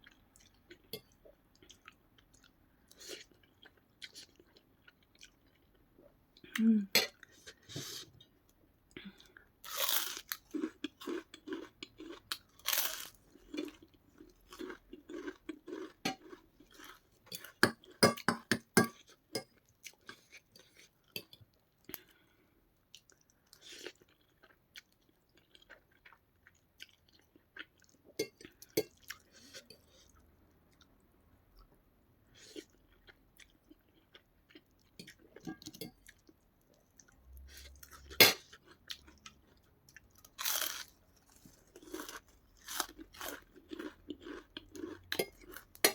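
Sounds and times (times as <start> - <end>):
crunchy biting and chewing: 9.7 - 17.0, 40.2 - 45.7.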